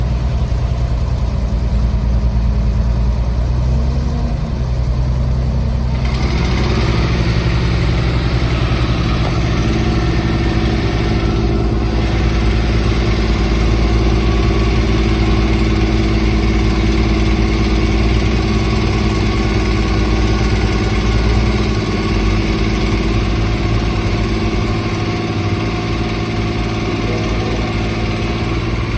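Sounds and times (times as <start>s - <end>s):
construction machine engine: 0.0s - 28.9s
loud hissing: 5.9s - 28.9s.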